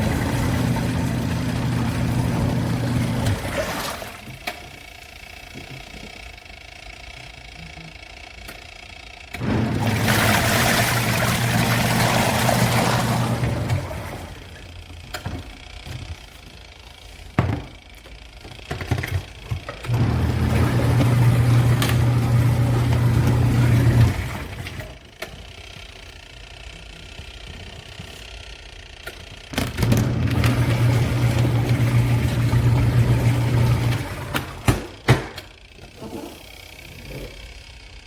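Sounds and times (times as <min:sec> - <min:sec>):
washing machine motor humming: 0:00.0 - 0:06.5, 0:09.2 - 0:25.8, 0:29.5 - 0:38.0.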